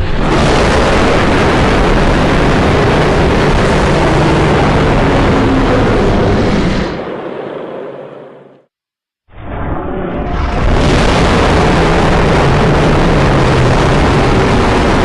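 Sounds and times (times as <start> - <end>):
monster roar: 0.0 - 7.1.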